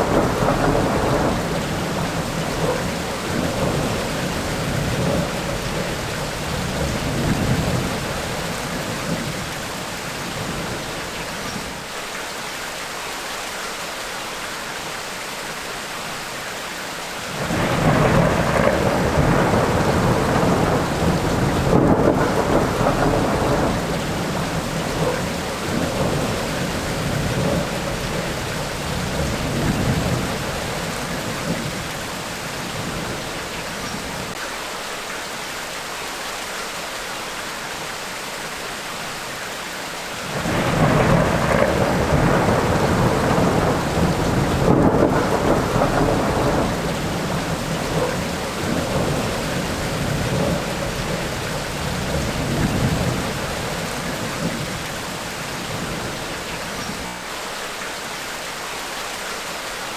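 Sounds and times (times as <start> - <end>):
rolling thunder rumble: 0.0 - 11.8, 17.3 - 34.4, 40.2 - 57.2
steady rain: 0.0 - 59.9.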